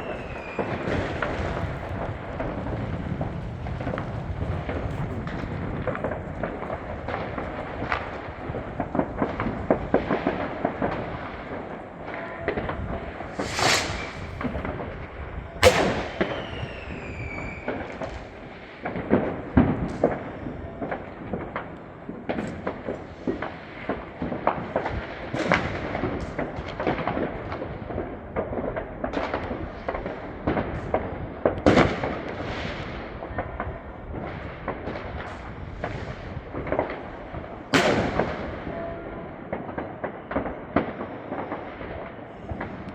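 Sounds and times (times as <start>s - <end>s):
whistling firework: 0.0s - 21.7s, 28.6s - 42.9s
firecrackers crackling: 0.0s - 42.9s
firework bangs: 0.0s - 42.9s.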